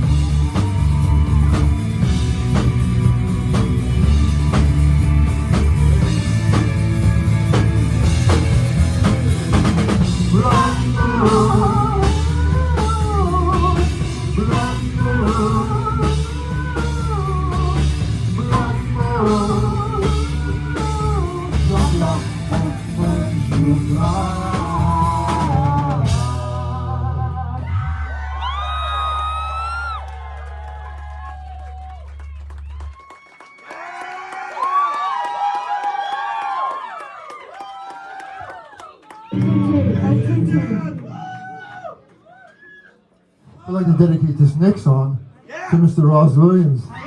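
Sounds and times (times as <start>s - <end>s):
drum kit beats: 0.0s - 27.0s
live rock band playing: 0.0s - 27.1s.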